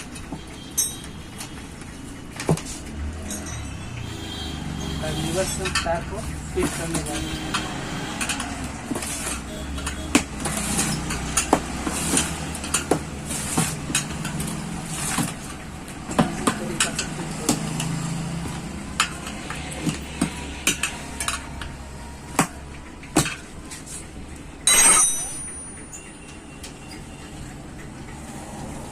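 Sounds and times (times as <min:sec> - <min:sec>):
tyre levers clinking on metal rim: 0:00.0 - 0:04.0, 0:24.6 - 0:27.1.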